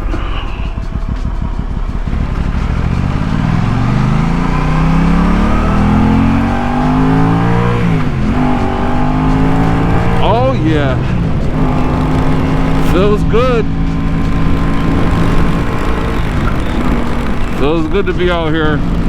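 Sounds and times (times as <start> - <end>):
motorcycle engine accelerating: 0.0 - 19.0.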